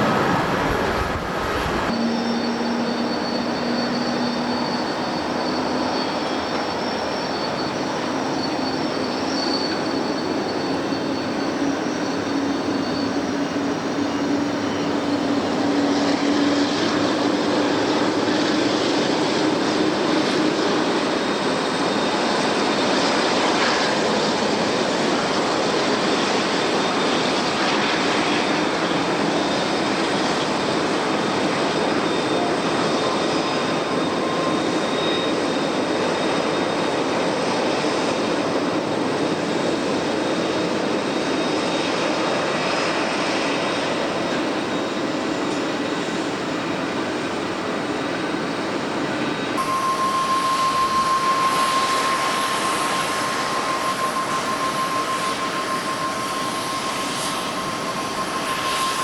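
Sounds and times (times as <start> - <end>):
steady high tone: 0.0 - 9.8, 49.6 - 59.0
jet engines rushing: 0.0 - 59.0.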